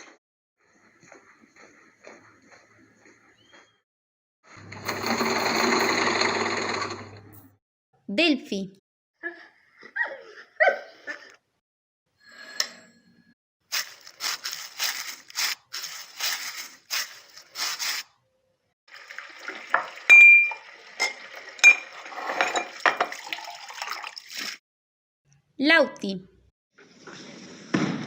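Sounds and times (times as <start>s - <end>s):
scratchy strokes: 13.7s - 18.0s
running water: 18.9s - 24.6s
dishes clinking: 19.8s - 23.3s.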